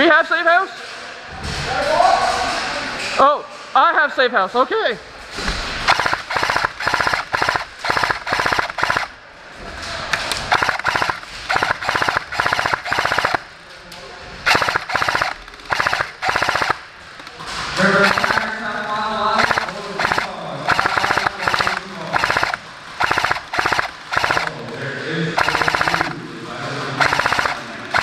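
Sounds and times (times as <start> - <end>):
airsoft machine gun firing bursts: 5.8 - 9.2, 10.5 - 13.5, 14.4 - 16.9, 17.8 - 18.6, 19.3 - 24.6, 25.4 - 26.2, 27.0 - 28.0.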